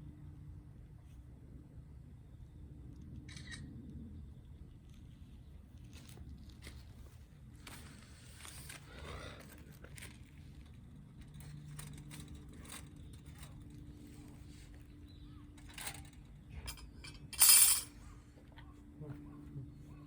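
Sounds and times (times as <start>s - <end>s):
camping gear clinking: 7.6s - 18.0s.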